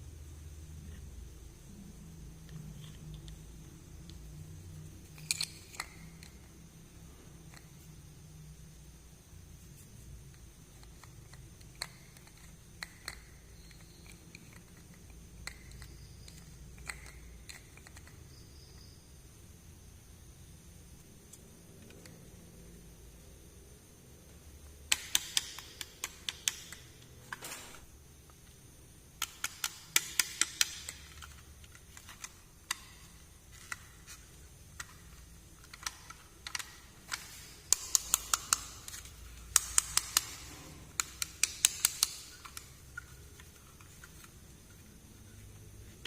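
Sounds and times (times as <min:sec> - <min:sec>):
plastic toy pieces clicking: 0:05.1 - 0:06.4, 0:10.8 - 0:18.2, 0:24.9 - 0:26.9, 0:29.2 - 0:34.0, 0:34.6 - 0:44.4.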